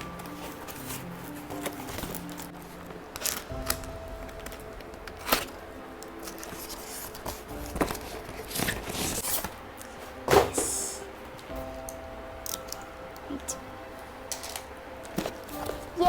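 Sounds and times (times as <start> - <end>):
packaging rustling and scraping: 0.0 - 11.1, 14.3 - 16.0.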